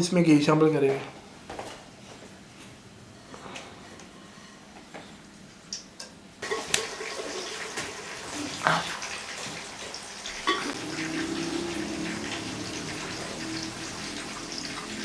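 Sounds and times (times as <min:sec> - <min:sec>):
chicken sizzling in hot ghee: 0:06.4 - 0:15.0.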